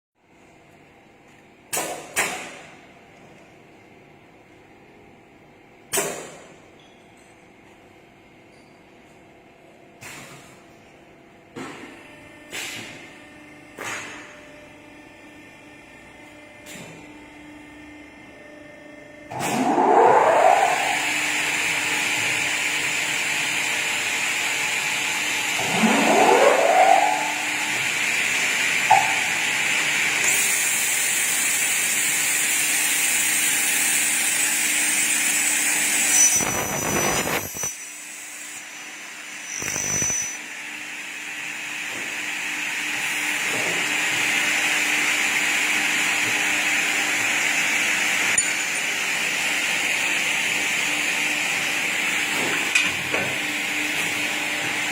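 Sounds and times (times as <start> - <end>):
motor spinning up with whine: 18.4 - 54.9
cutting saw running: 19.5 - 54.9.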